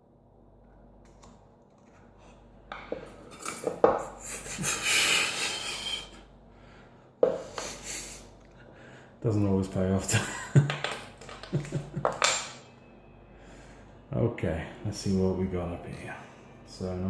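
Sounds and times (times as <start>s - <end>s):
small metal lock parts clicking: 10.8s - 12.6s.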